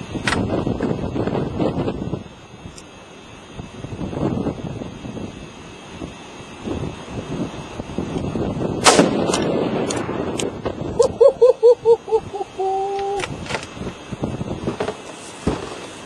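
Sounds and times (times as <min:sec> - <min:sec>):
rifle shot with echoes: 0:08.8 - 0:10.1.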